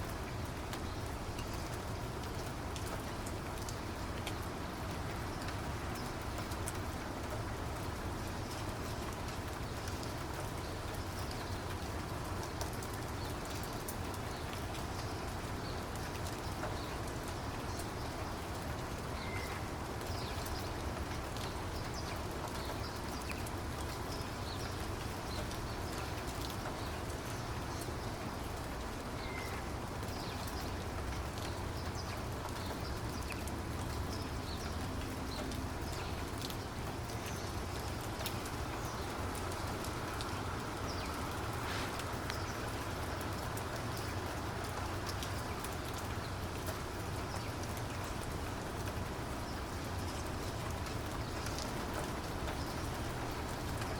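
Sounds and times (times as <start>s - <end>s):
rain falling: 0.0s - 53.9s.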